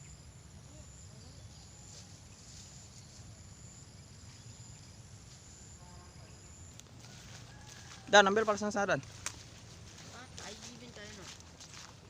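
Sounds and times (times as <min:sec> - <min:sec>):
insects trilling: 0:00.0 - 0:12.0.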